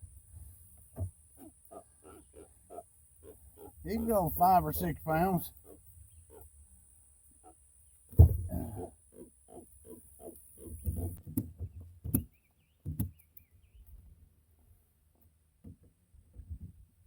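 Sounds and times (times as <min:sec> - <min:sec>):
faint bird chirping: 0:00.0 - 0:14.0
short knocks and thumps: 0:08.1 - 0:08.8.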